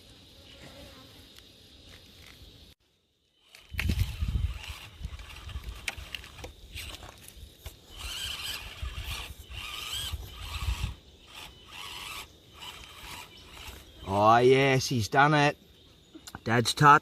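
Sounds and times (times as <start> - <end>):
small electric motor whirring: 3.4 - 14.2
tyres scraping over ground: 3.4 - 14.2.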